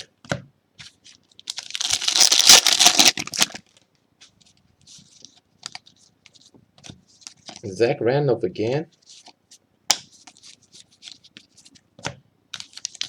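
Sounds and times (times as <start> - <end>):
card pack wrapper tearing: 1.4 - 3.6.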